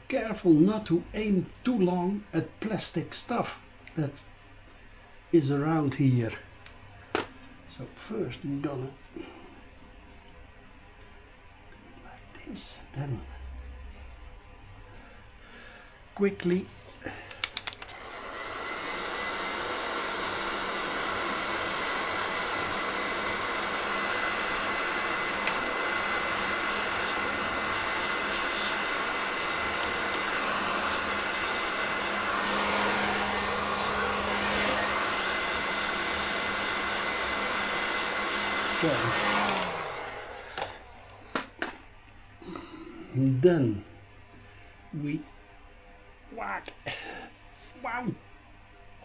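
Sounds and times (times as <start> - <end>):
heat gun blowing hot air: 17.4 - 41.6.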